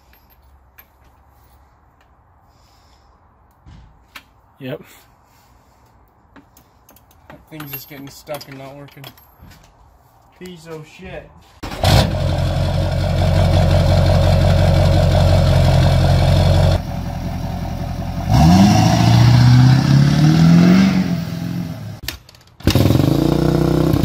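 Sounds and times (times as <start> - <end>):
car engine revving: 18.0 - 22.0.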